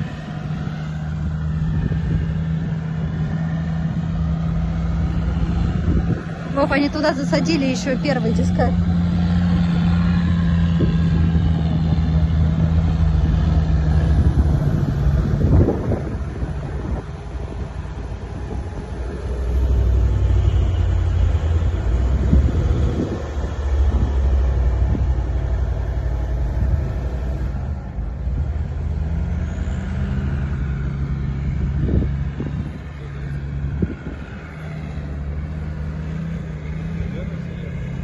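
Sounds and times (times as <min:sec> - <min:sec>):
off-road vehicle engine under load: 0:00.0 - 0:38.0.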